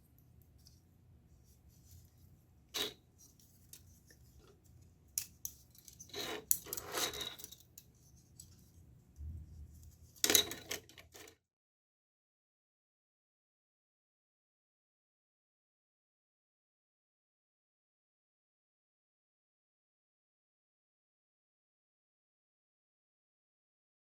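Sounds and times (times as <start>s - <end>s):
small objects being handled: 0.1s - 9.0s
faint low hum: 7.5s - 10.2s.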